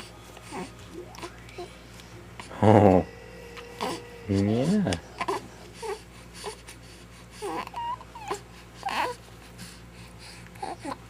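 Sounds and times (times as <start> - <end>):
baby squeaking and cooing: 7.4 - 9.2.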